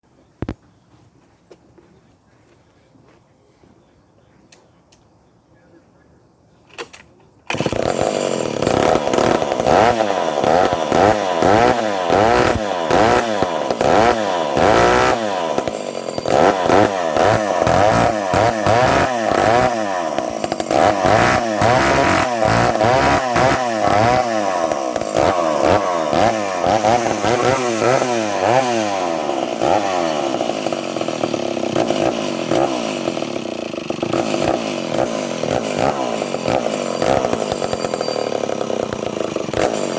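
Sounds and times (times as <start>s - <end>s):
starter cord pull: 6.7s - 9.0s
chainsaw engine revving: 7.5s - 39.9s.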